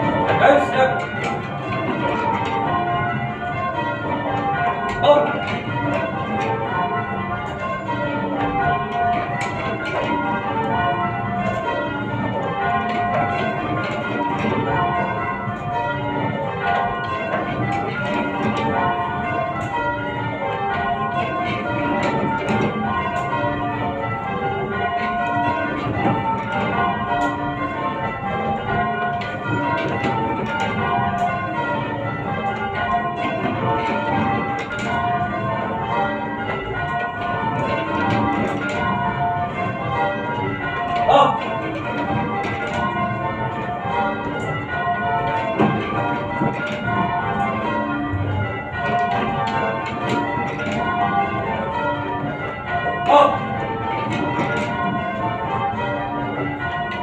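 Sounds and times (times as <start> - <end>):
church bells change ringing: 0.0 - 57.0.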